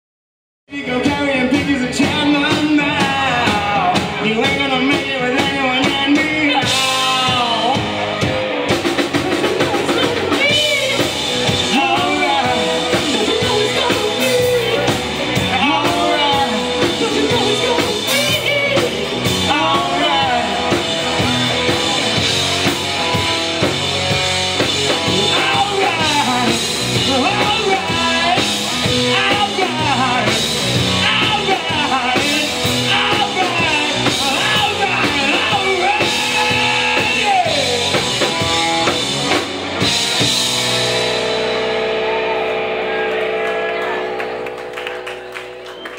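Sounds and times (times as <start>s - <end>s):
person singing: 0.7s - 8.3s, 9.1s - 23.2s, 24.6s - 39.0s
drum kit: 0.7s - 45.9s
guitar: 0.7s - 45.9s.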